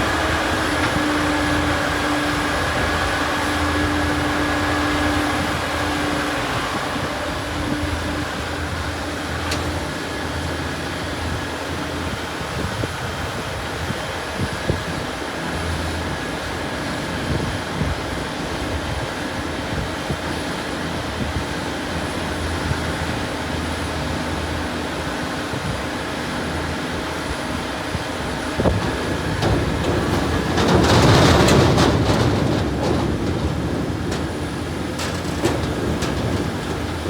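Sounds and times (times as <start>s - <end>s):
harvesting machine engine rumble: 0.0s - 37.0s.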